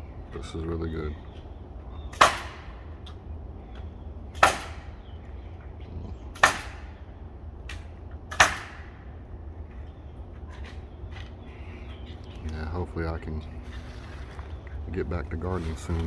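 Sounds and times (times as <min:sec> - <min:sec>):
hammer bangs driving nails: 0:02.1 - 0:02.9, 0:04.3 - 0:05.0, 0:06.3 - 0:07.1, 0:07.7 - 0:09.1.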